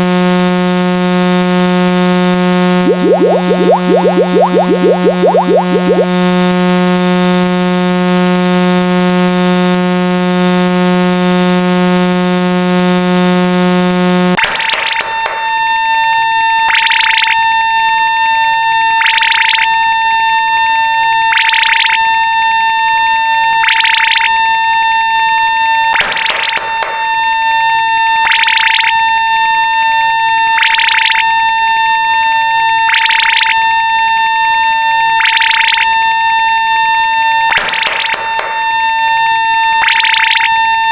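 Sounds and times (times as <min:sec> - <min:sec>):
low buzzer-like drone: 0:00.0 - 0:14.4
high alarm-like tone: 0:00.1 - 0:10.5
pulsing beep: 0:00.2 - 0:08.2, 0:09.6 - 0:10.5.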